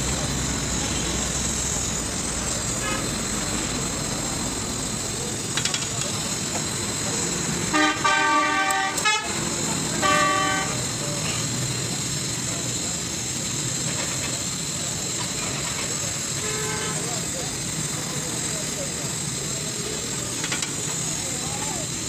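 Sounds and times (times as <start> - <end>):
street traffic noise: 0.0 - 22.0
vehicle horn honking: 7.7 - 9.4, 10.0 - 10.8, 16.4 - 17.0.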